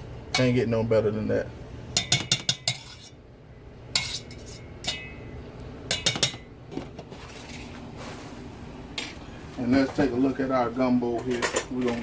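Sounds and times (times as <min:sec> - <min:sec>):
metal utensils clinking on pots: 0:00.3 - 0:00.7, 0:02.0 - 0:03.2, 0:03.9 - 0:05.3, 0:05.9 - 0:06.5, 0:11.2 - 0:12.0.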